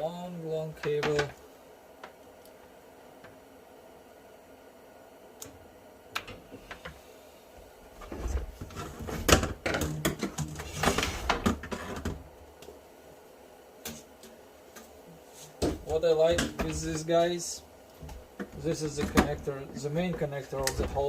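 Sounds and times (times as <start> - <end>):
shop vacuum parts knocking and rattling: 18.4 - 21.0.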